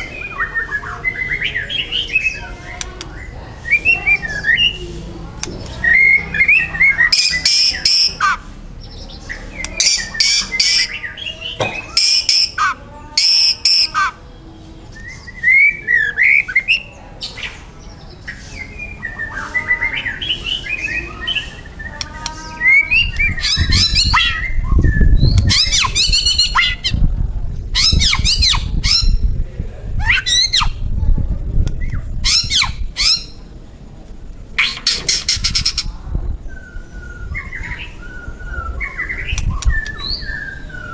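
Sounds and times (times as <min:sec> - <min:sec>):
bird singing whistles and trills: 0:05.8 - 0:14.2, 0:14.9 - 0:27.0, 0:27.8 - 0:29.3, 0:34.6 - 0:40.9
low rumbling noise: 0:19.9 - 0:40.9.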